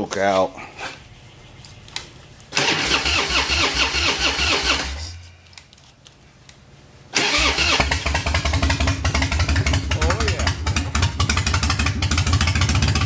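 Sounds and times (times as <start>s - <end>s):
old car engine starting: 2.5s - 5.2s, 7.2s - 13.0s.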